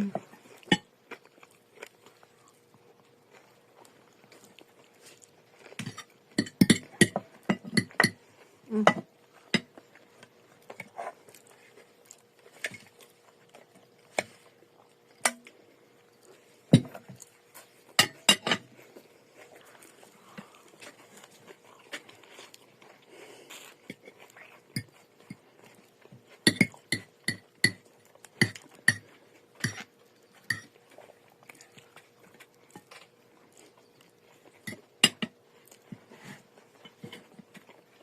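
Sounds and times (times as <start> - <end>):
cutlery clinking against dishes: 18.0 - 18.7.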